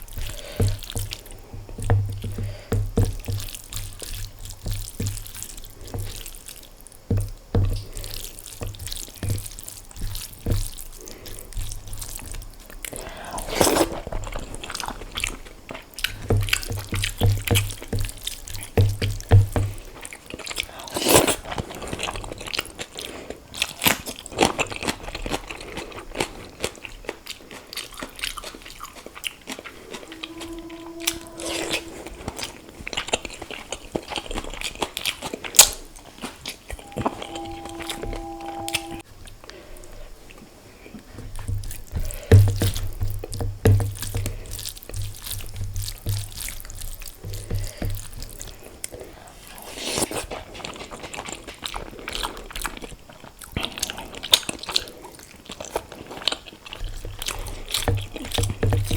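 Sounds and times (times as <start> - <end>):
chewing and crunching: 0.0 - 30.0, 41.0 - 58.9
brief hum: 29.8 - 33.3, 36.8 - 39.0.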